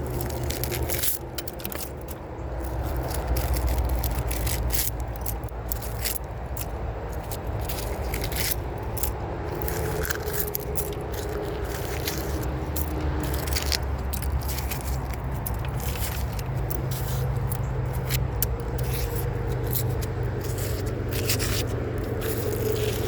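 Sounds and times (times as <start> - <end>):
metal scraps scraping and clicking: 0.0 - 23.0.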